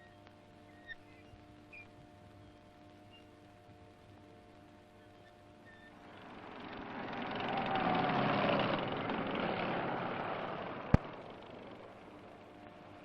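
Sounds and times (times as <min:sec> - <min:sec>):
faint falling whine: 0:00.0 - 0:13.0
vehicle engine passing: 0:06.0 - 0:13.0.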